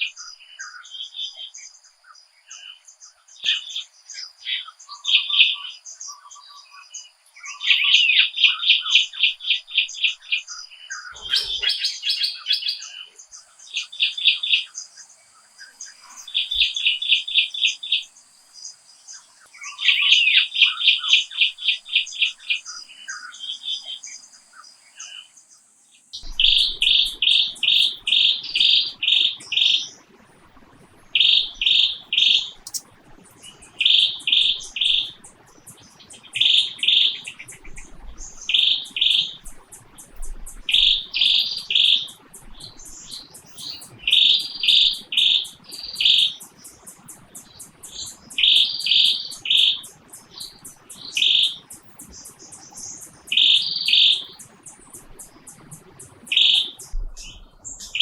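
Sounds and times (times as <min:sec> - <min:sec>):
insects ticking: 0:00.0 - 0:58.0
bird chirping loudly: 0:11.1 - 0:12.7, 0:26.2 - 0:29.9, 0:31.2 - 0:32.9, 0:56.3 - 0:58.0.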